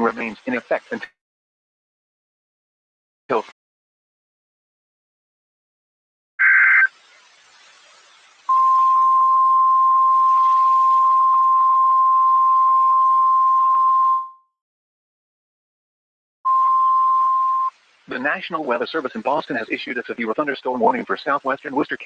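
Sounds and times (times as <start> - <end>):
screech of digital header data: 6.4 - 7.1, 8.5 - 14.1
steady alarm tone: 8.5 - 14.3.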